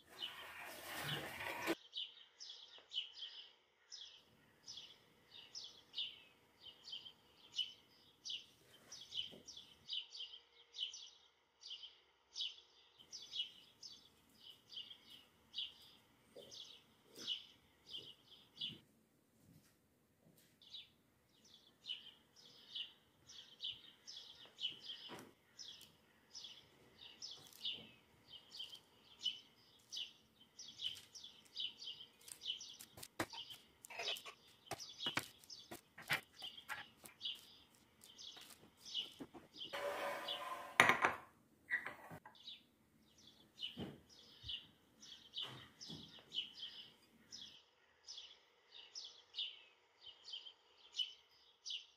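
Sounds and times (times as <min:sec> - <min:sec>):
small bird chirping: 0:20.6 - 0:40.6.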